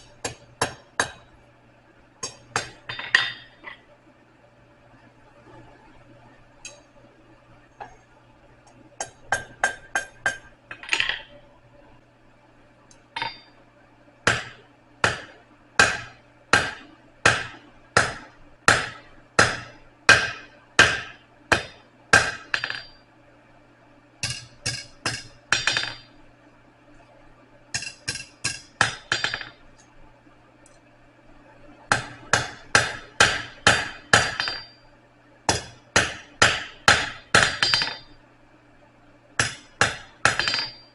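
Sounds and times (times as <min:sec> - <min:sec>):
hammer striking steel on anvil: 0:00.0 - 0:01.3, 0:02.2 - 0:03.8, 0:09.0 - 0:11.2, 0:13.2 - 0:13.6, 0:14.3 - 0:23.0, 0:24.2 - 0:26.2, 0:27.8 - 0:29.6, 0:31.9 - 0:34.8, 0:35.5 - 0:38.2, 0:39.4 - 0:40.9
faint low hum: 0:00.0 - 0:40.9.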